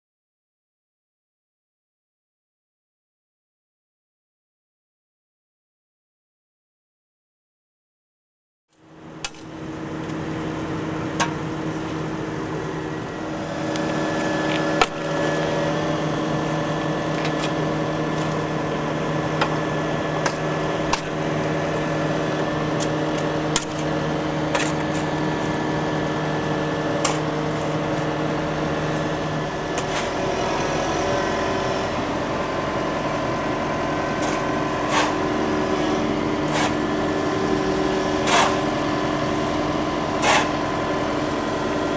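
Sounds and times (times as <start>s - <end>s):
excavator engine running: 8.9s - 41.9s.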